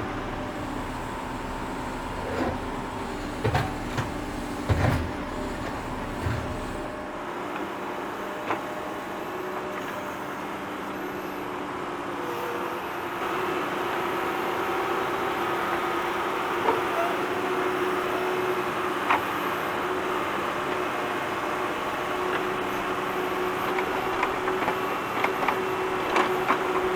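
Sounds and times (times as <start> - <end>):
tractor engine running: 0.0 - 7.0.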